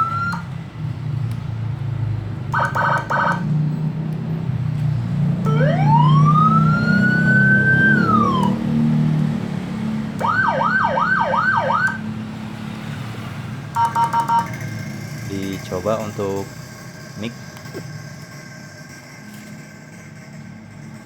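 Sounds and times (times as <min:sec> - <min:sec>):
electronic siren wailing: 0:00.0 - 0:00.5, 0:02.5 - 0:03.5, 0:05.4 - 0:09.0, 0:10.2 - 0:12.1, 0:13.8 - 0:14.6
rising siren whoops: 0:00.0 - 0:00.5, 0:05.4 - 0:09.2, 0:10.2 - 0:12.1.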